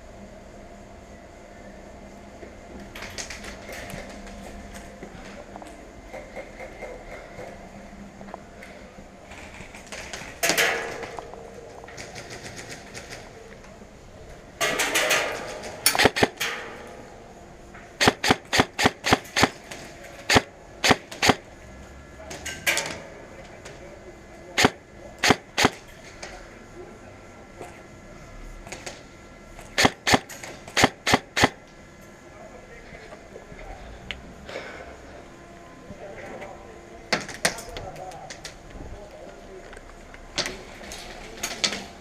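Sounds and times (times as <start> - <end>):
airsoft gun shots: 14.6 - 16.7, 18.0 - 21.4, 24.6 - 25.8, 29.8 - 31.6.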